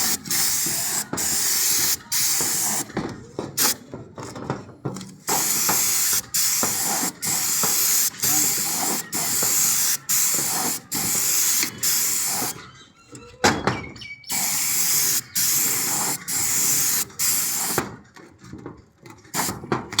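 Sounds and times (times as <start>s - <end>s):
paint sprayer hissing: 0.0s - 3.0s, 3.6s - 3.8s, 5.3s - 12.6s, 14.3s - 17.8s.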